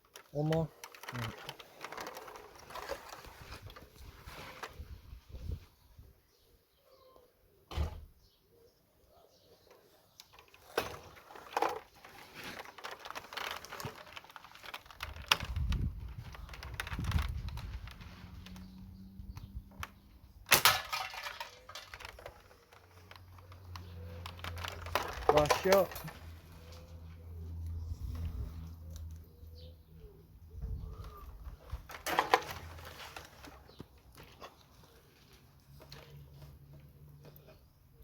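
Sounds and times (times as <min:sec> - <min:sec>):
clicks and knocks of handling: 0:00.0 - 0:04.7, 0:09.7 - 0:27.0, 0:31.0 - 0:37.7.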